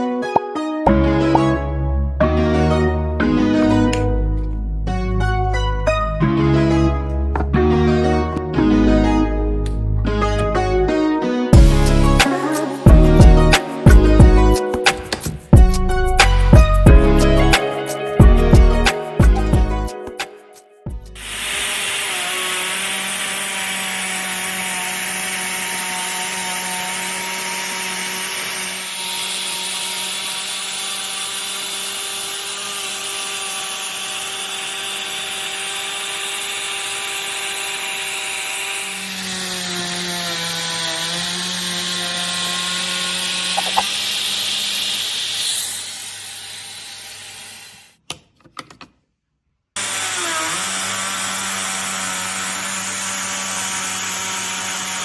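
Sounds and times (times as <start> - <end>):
router bit cutting wood: 11.6 - 20.2, 21.2 - 48.0, 49.8 - 55.0
trim router whining: 21.2 - 48.0, 49.8 - 55.0.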